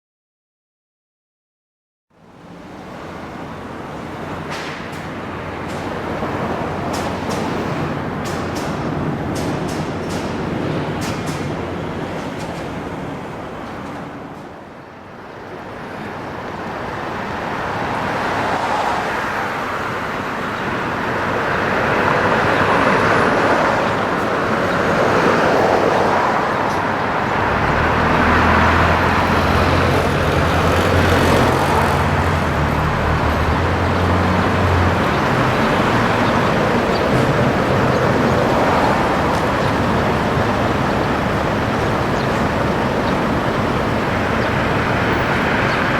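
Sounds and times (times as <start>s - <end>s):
vehicles passing: 2.2s - 45.9s
heavy engine running: 2.5s - 18.5s, 19.2s - 45.9s.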